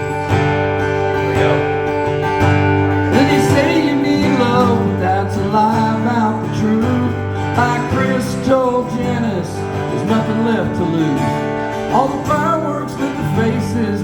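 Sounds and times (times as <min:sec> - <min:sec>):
wavering lead melody: 0:00.0 - 0:07.6
strummed acoustic guitar: 0:00.0 - 0:14.0.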